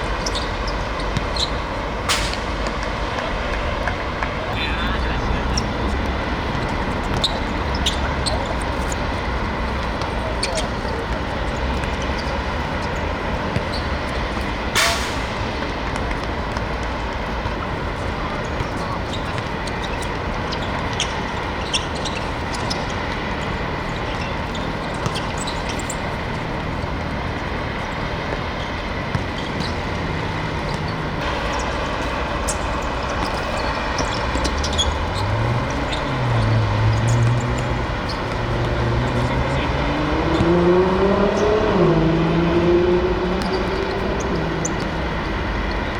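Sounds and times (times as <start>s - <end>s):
vehicle traffic noise: 0.0s - 45.9s
engine revving: 33.8s - 45.1s.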